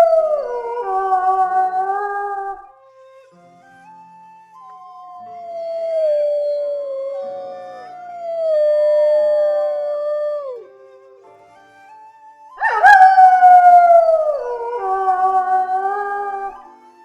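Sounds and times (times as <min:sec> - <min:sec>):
wolf howling: 0:00.0 - 0:02.7, 0:05.3 - 0:11.1, 0:12.6 - 0:16.7.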